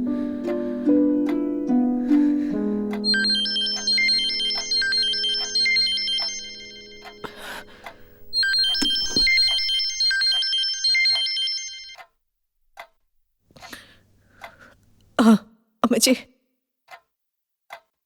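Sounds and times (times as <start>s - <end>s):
phone ringtone: 3.0s - 12.0s.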